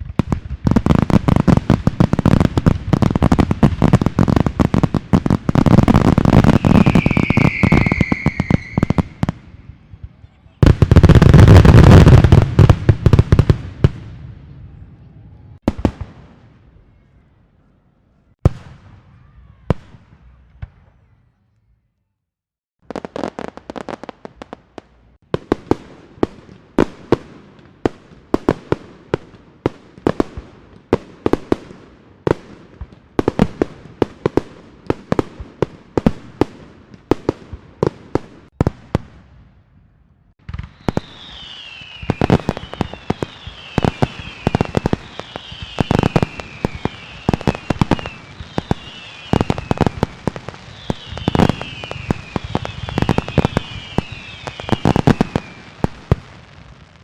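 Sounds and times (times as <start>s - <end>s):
fireworks crackle: 0.0s - 14.1s, 22.8s - 39.3s, 40.3s - 57.0s
fireworks bangs: 0.0s - 17.1s, 18.3s - 21.1s, 22.8s - 57.0s
fireworks hiss: 1.1s - 9.6s, 40.5s - 56.9s
falling whistles: 6.4s - 9.3s, 40.6s - 49.8s, 50.7s - 55.8s.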